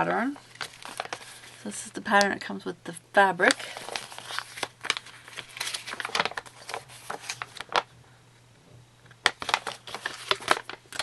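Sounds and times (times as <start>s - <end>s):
paper and packaging crinkling: 0.0s - 2.3s, 3.4s - 7.9s, 9.2s - 11.0s.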